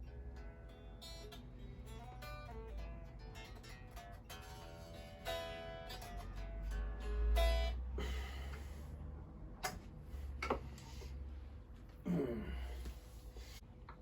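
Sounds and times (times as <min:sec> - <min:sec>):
guitar string bending: 0:00.0 - 0:08.8
low amp hum: 0:00.0 - 0:14.0
electric guitar note ringing: 0:00.1 - 0:08.6.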